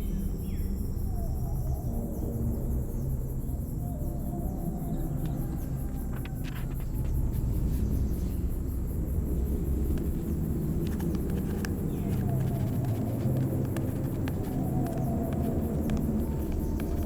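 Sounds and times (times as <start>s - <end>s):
faint clicks: 9.3s - 17.0s.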